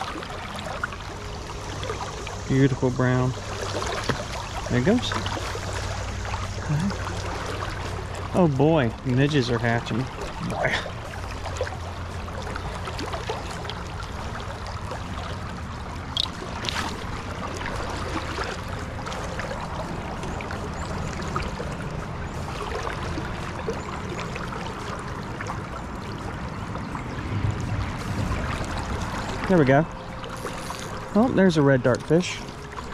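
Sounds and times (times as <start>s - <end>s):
river current flowing: 0.0s - 32.9s.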